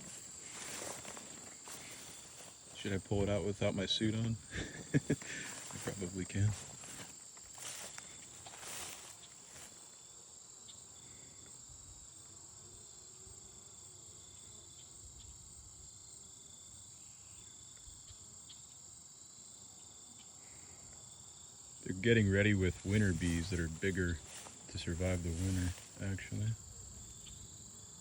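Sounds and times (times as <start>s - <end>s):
rustling: 0.0s - 3.0s, 5.1s - 9.8s, 22.6s - 26.2s
high-pitched insect chorus: 0.0s - 28.0s.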